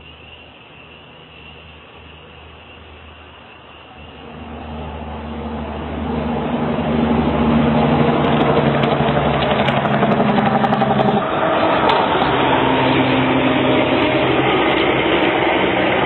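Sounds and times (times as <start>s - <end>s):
low engine-like hum: 0.0s - 16.0s.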